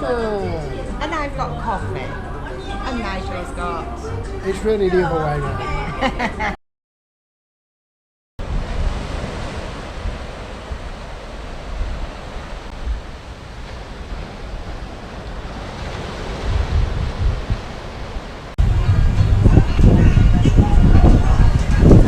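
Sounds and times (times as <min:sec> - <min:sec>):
surf washing onto beach: 0:08.4 - 0:22.0
wind buffeting microphone: 0:08.4 - 0:22.0.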